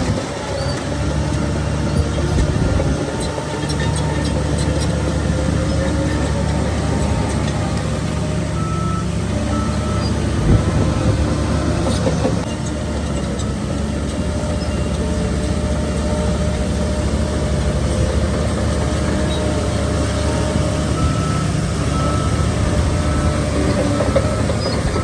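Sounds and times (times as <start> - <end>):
heavy diesel engines running: 0.0 - 25.0
reversing alarm beeping: 6.8 - 12.1, 20.6 - 25.0.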